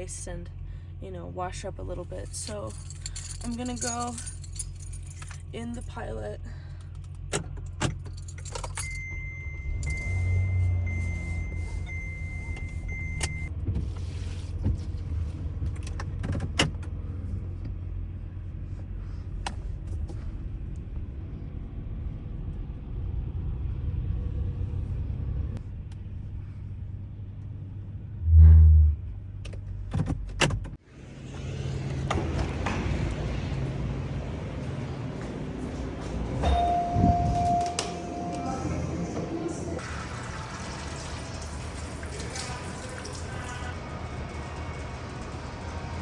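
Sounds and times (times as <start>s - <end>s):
high steady beep: 8.8s - 13.5s, 36.4s - 38.8s.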